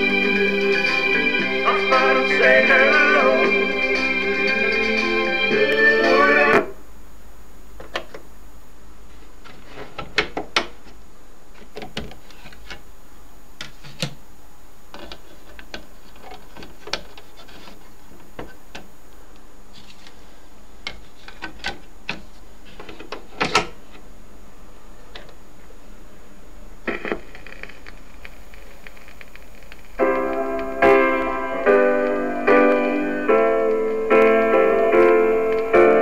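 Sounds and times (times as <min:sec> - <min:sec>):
record player mechanical clicks: 0:26.9 - 0:32.8.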